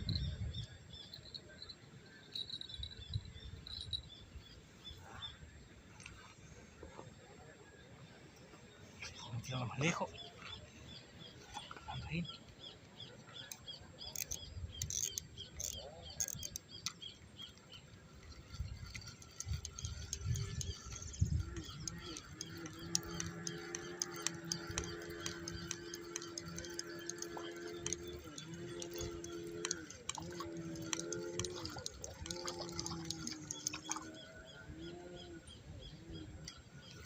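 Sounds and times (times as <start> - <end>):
birds chirping: 0.0 - 37.0
steady low hum: 10.1 - 37.0.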